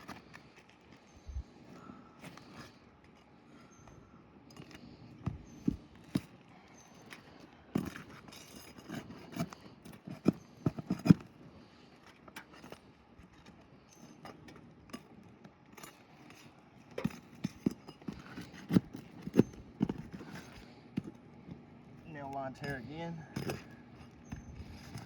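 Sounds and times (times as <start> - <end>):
hand tools knocking and scraping: 4.5 - 11.3, 14.0 - 21.6, 22.2 - 25.0.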